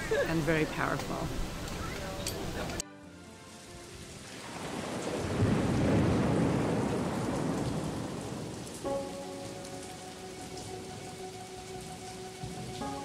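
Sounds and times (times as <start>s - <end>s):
rainfall: 0.0s - 13.0s
thunder rumble: 4.0s - 13.0s.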